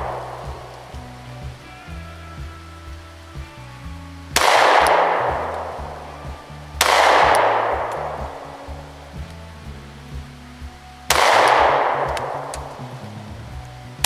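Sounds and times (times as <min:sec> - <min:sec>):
pistol shots with echo: 0:00.0 - 0:00.8, 0:04.4 - 0:06.0, 0:06.8 - 0:08.6, 0:11.1 - 0:12.8
background music with bass line: 0:00.0 - 0:14.0.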